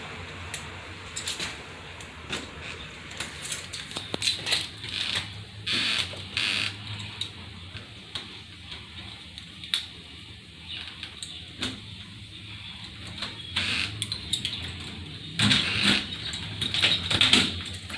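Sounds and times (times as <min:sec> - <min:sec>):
metal lock parts clicking and scraping: 0:03.2 - 0:05.4, 0:13.1 - 0:17.9.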